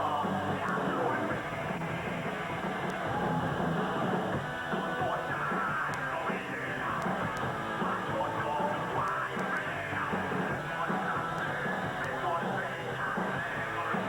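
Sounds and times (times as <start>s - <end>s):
rock band playing: 0.0s - 14.0s.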